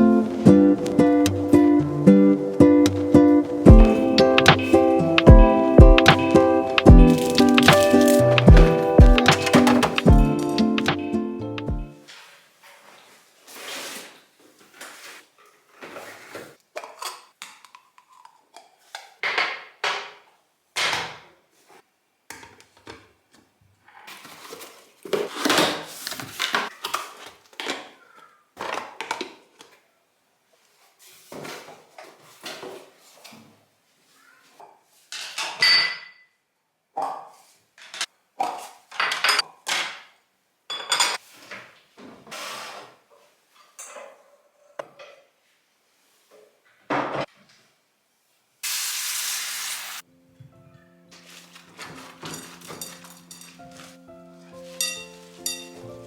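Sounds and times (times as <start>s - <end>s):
packaging rustling: 6.8s - 10.8s, 24.0s - 29.8s, 51.1s - 55.8s
dishes clinking: 35.6s - 36.3s, 40.7s - 41.2s, 51.8s - 53.9s, 54.7s - 55.9s.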